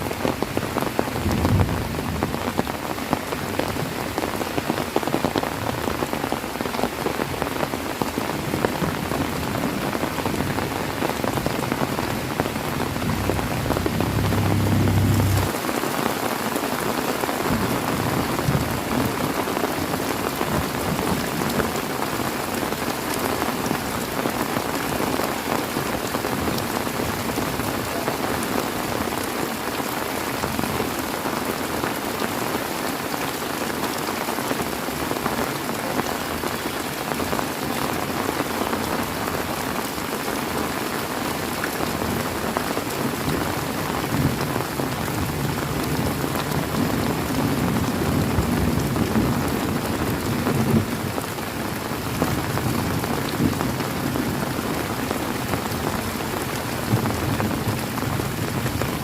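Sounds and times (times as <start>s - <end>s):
heavy rain falling: 0.0s - 59.0s
low rumble: 12.5s - 15.5s.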